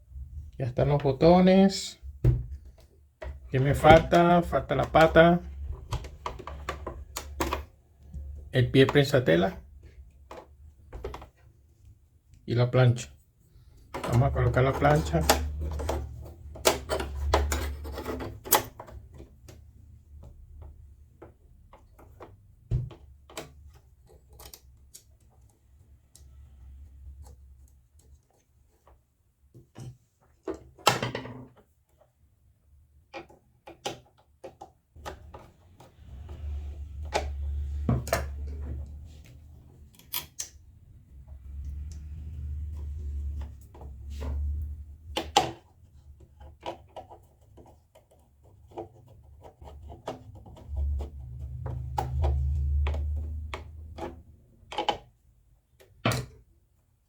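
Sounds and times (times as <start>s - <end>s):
small parts clicking and knocking: 13.9s - 26.3s.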